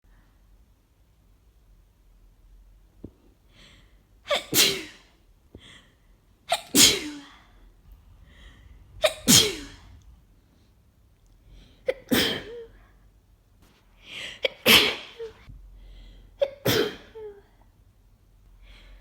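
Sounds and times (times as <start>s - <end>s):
person sneezing: 4.3s - 5.1s, 6.5s - 7.5s, 9.0s - 10.0s, 11.9s - 12.8s, 14.1s - 15.5s, 16.4s - 17.4s
faint intake of breath: 7.4s - 10.8s.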